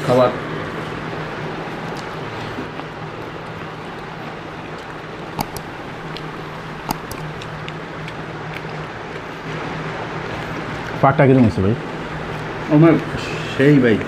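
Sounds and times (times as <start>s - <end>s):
steady low hum: 4.4s - 9.6s
eating clicks: 5.3s - 8.8s.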